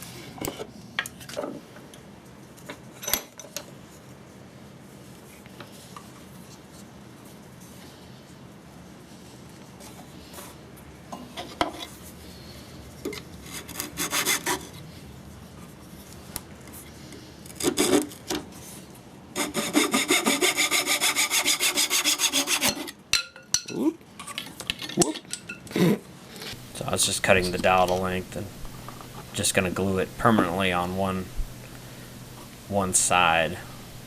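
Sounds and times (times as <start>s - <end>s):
saw cutting wooden dowel: 13.5s - 14.7s, 19.4s - 23.0s.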